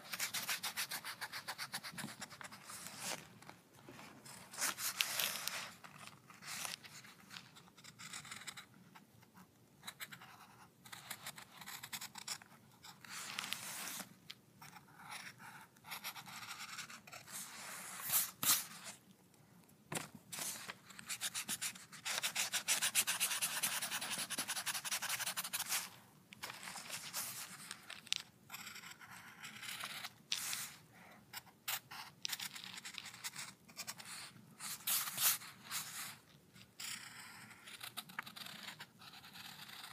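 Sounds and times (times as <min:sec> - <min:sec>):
drawing strokes scratching on paper: 0:00.0 - 0:03.2, 0:20.4 - 0:27.9.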